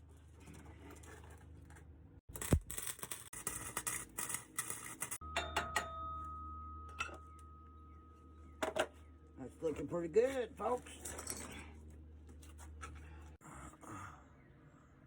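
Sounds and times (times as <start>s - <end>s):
welding arc crackling: 2.3s - 5.2s.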